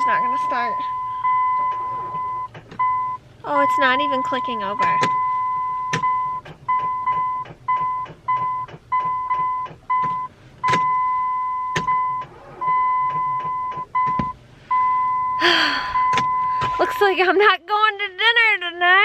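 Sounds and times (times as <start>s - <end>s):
car warning chime tone: 0.0s - 17.2s.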